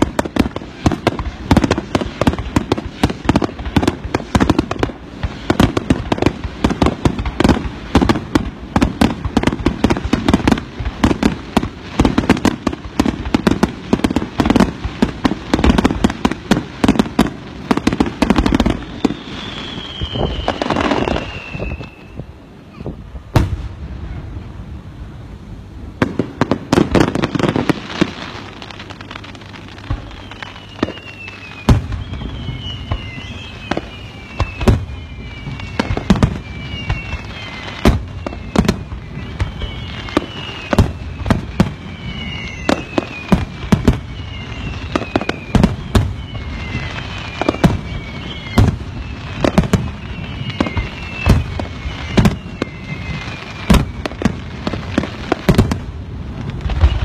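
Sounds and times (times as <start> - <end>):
fireworks bangs: 0.0 - 25.2, 25.8 - 57.0
high falling whistle: 18.3 - 23.0, 29.9 - 55.0, 56.6 - 57.0.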